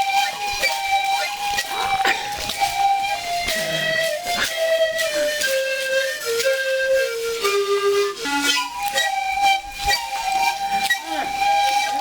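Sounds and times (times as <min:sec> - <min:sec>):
high piping melody: 0:00.0 - 0:06.5
percussive beats: 0:00.4 - 0:05.6.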